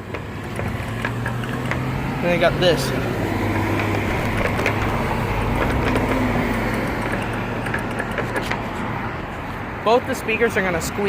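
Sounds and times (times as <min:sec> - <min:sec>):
vehicles driving past: 0:00.0 - 0:11.0.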